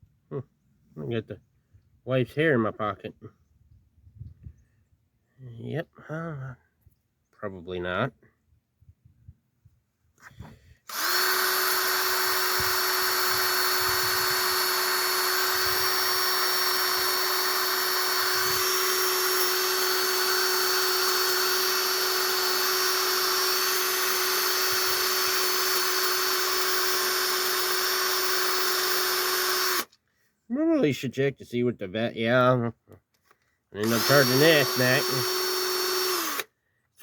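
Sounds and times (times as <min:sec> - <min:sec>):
cordless drill spinning wire wheel: 0:10.9 - 0:30.0, 0:33.8 - 0:36.5.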